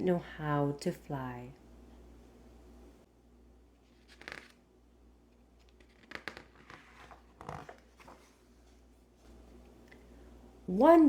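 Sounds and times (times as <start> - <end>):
paper rustling: 3.8 - 4.6, 5.6 - 9.6.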